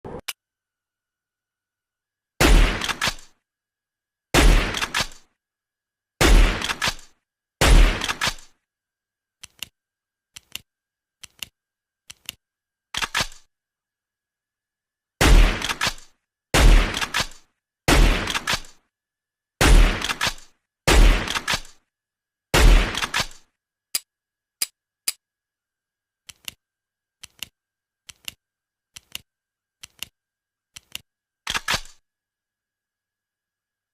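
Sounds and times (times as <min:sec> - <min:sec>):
gunshot tail: 0:02.4 - 0:03.1, 0:04.4 - 0:05.1, 0:15.2 - 0:15.8, 0:17.9 - 0:18.6, 0:19.6 - 0:20.3, 0:20.9 - 0:21.6, 0:22.6 - 0:23.3
shotgun bang: 0:02.4 - 0:03.2, 0:04.4 - 0:05.2, 0:17.9 - 0:18.7, 0:19.6 - 0:21.6, 0:22.6 - 0:23.3.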